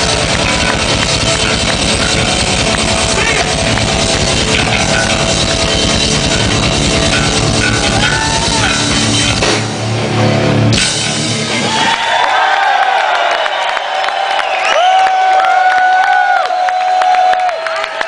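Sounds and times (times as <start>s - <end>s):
crowd whistling: 0.0s - 9.3s, 11.5s - 18.0s
live rock band playing: 0.0s - 12.2s
crowd cheering: 0.0s - 18.0s.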